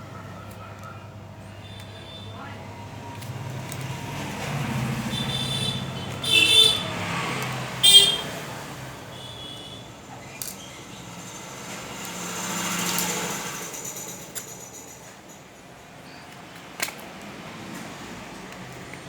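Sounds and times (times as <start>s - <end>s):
road traffic passing: 0.0s - 19.0s
high-pitched horn honks: 5.0s - 7.0s, 7.8s - 8.4s, 9.1s - 9.9s.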